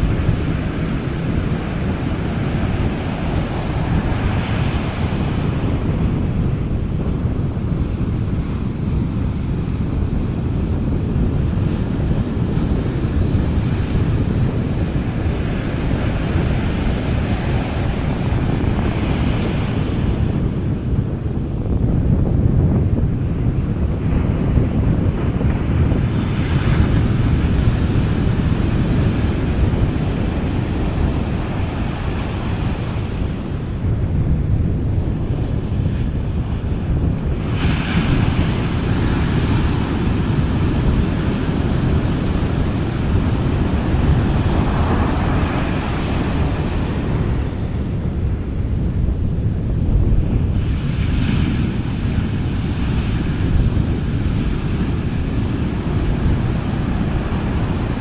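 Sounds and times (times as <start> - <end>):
wind rumble on microphone: 0.0 - 58.0
sea waves washing up beach: 25.6 - 48.8, 50.2 - 58.0.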